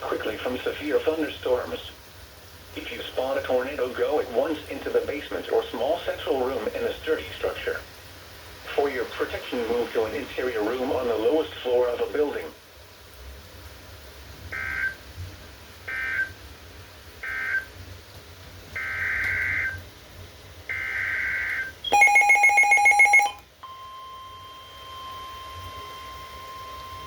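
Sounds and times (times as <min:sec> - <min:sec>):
steady single-pitched alarm tone: 0:21.4 - 0:27.0.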